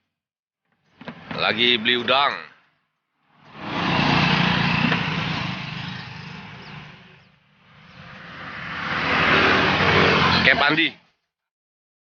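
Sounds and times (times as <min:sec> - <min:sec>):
vehicle engine running: 0:03.3 - 0:10.6
steady rushing noise: 0:03.5 - 0:10.7.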